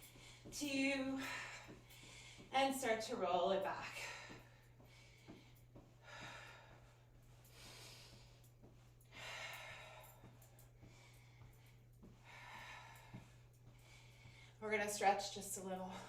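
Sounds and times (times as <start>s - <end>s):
faint steady hum: 0.0s - 16.0s
woman breathing hard: 1.2s - 2.5s, 3.8s - 14.6s.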